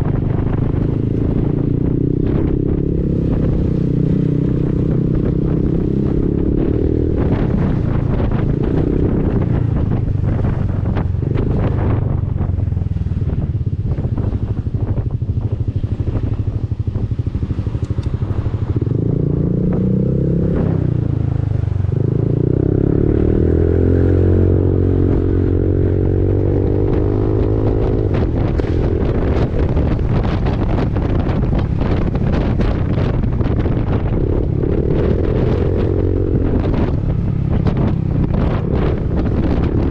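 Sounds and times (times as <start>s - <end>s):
wind buffeting microphone: 0.0s - 39.9s
scooter engine: 9.5s - 39.9s.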